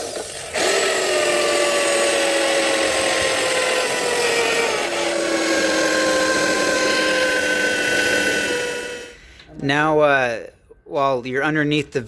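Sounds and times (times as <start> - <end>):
electric drill boring through steel: 0.0 - 9.2.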